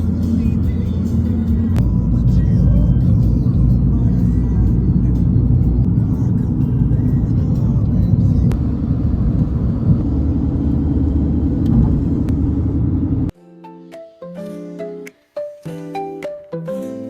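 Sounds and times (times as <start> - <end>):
car road and engine noise: 0.0 - 13.3.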